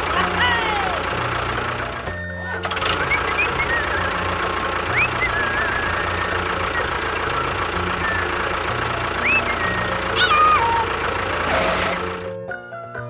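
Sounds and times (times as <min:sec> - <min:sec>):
small motor running: 0:00.0 - 0:12.2
whistle-like glides: 0:03.0 - 0:12.0.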